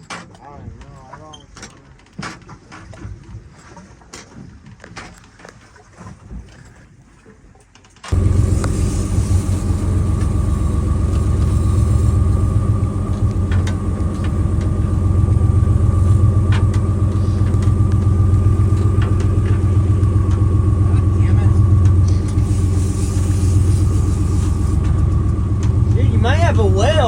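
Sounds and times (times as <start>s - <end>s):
boat engine rumbling: 8.1s - 27.0s.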